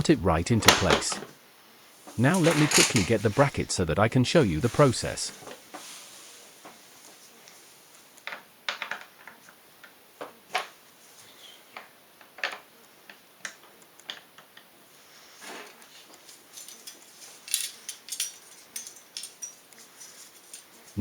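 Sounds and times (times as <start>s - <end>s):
light clinks: 16.5s - 21.0s.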